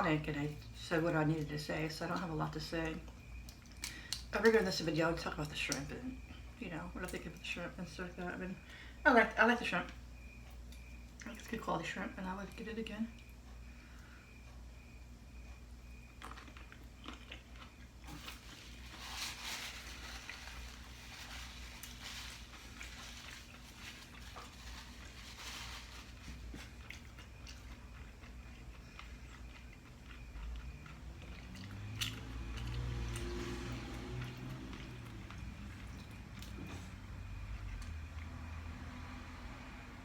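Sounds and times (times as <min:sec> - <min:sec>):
person chewing food: 0:15.8 - 0:38.3.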